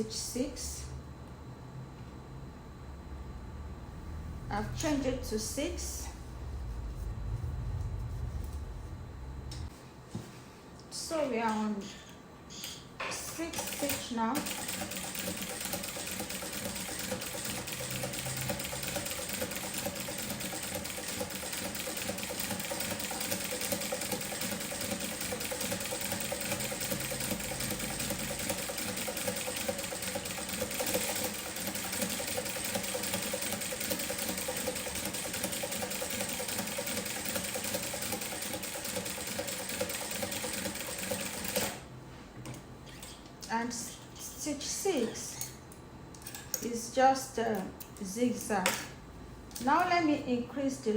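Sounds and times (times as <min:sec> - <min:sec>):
sewing machine stitching: 0:13.6 - 0:41.8.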